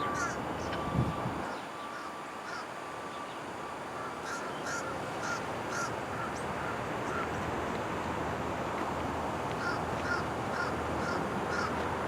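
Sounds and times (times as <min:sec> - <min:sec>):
bird calling: 0:00.0 - 0:07.4, 0:09.6 - 0:11.8
outdoor background noise: 0:00.0 - 0:12.0.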